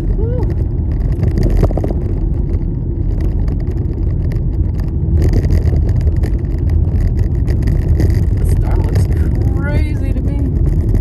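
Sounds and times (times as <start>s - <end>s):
car driving rumble: 0.0s - 11.0s.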